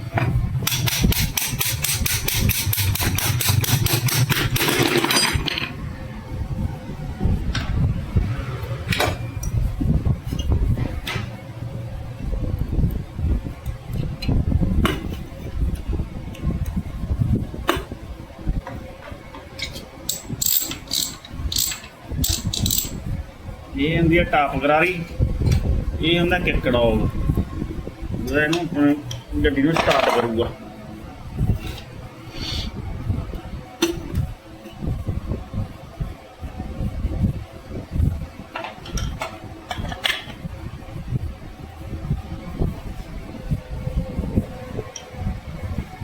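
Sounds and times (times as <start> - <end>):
low steady hum: 0.0 - 46.0
metal gearbox parts handled: 0.7 - 5.7, 19.6 - 23.0
quick metallic tool clicks: 20.1 - 23.0
ratchety rasps: 20.1 - 23.0.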